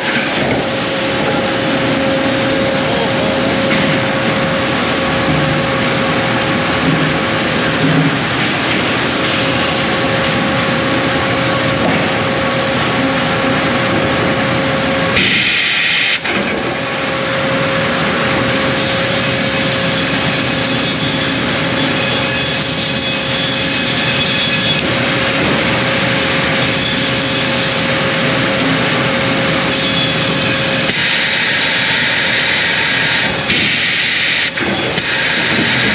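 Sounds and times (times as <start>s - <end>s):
band saw machinery noise: 0.0s - 35.9s
thin high whine: 18.6s - 24.9s.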